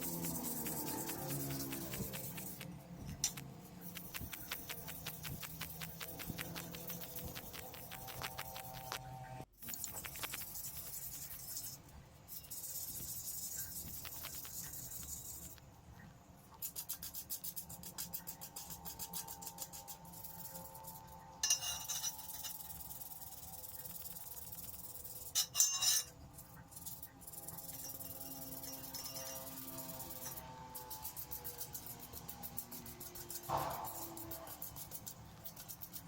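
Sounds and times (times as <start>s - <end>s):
sandpaper rubbing on metal: 0.0s - 9.0s, 9.6s - 15.6s, 16.6s - 36.0s.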